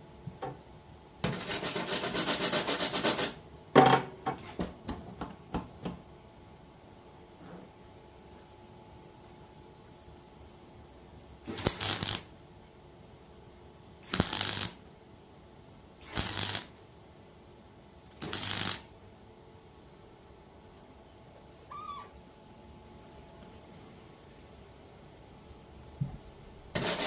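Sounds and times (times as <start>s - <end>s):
welder crackling: 11.4s - 12.3s, 14.0s - 14.8s, 16.0s - 16.8s, 18.1s - 18.9s
brief squeak: 21.7s - 22.1s.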